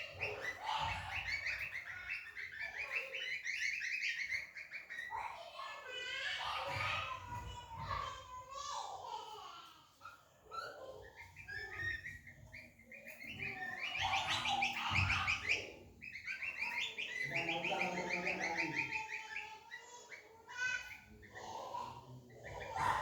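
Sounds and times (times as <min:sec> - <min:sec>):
songbirds singing chattering notes: 0:00.0 - 0:23.0.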